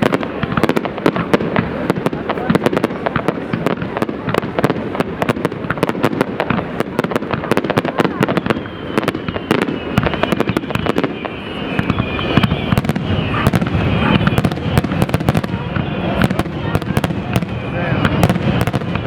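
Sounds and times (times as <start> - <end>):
fireworks bangs and crackles: 0.0 - 19.0
faint whistle falling in pitch: 8.0 - 19.0.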